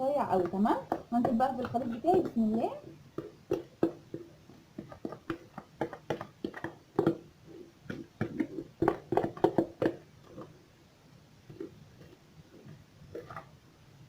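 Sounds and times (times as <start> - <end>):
utensil knocking and scraping bowl: 0.0 - 10.6.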